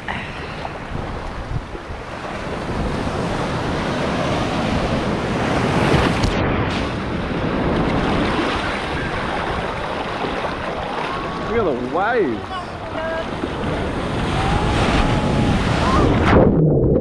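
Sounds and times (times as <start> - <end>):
waves breaking: 0.0 - 16.5
wind buffeting microphone: 0.0 - 17.0.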